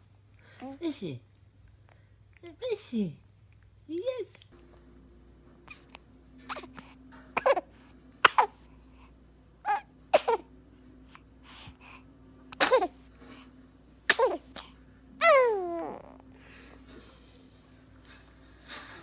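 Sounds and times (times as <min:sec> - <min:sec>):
baby sneezing: 0:05.7 - 0:06.8, 0:07.4 - 0:08.6, 0:09.7 - 0:10.5, 0:12.5 - 0:13.0, 0:14.1 - 0:15.7.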